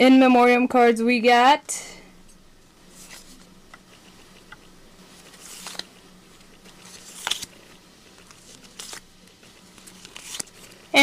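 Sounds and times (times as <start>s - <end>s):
trading card packaging crinkling: 5.2s - 10.9s.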